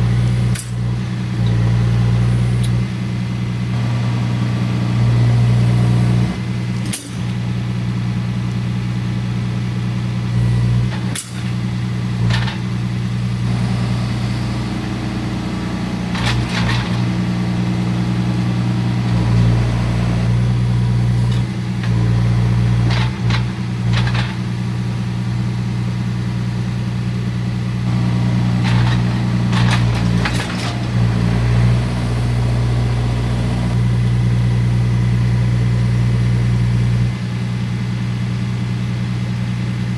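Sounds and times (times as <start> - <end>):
tractor diesel engine running: 0.0 - 39.9
short knocks and clanks: 16.1 - 17.2, 22.9 - 24.4, 28.6 - 31.1.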